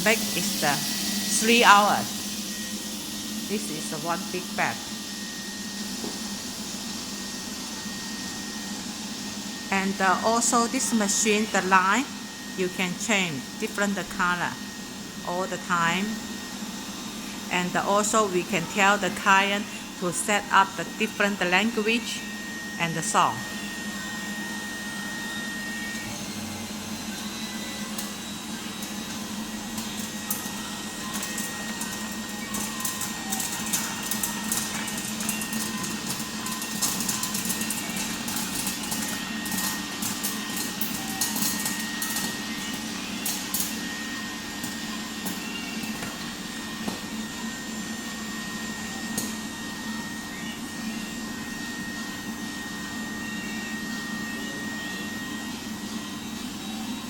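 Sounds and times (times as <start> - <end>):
popcorn machine whirring: 0.0 - 57.0
popcorn kernels popping: 29.9 - 43.7.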